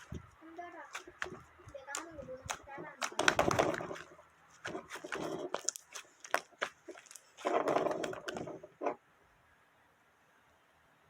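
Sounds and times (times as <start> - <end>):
slime squished by hand: 0.0 - 8.9
sharp slime pops: 0.9 - 8.5.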